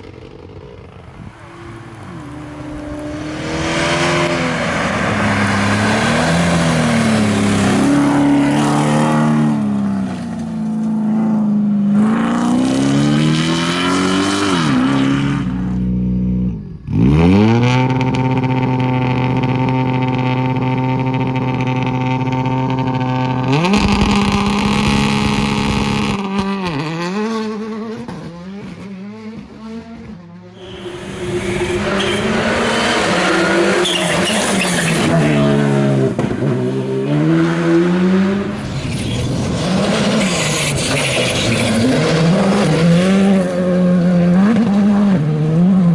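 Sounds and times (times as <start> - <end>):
rally car engines revving: 0.0 - 45.9.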